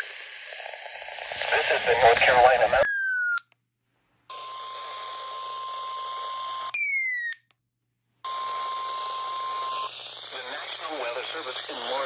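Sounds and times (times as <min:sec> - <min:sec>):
radio hiss: 0:00.0 - 0:02.8, 0:08.9 - 0:12.0.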